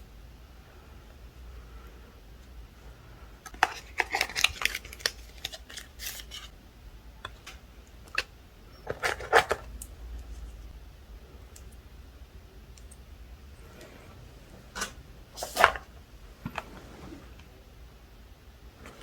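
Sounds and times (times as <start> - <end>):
packaging rustling: 3.4 - 6.5.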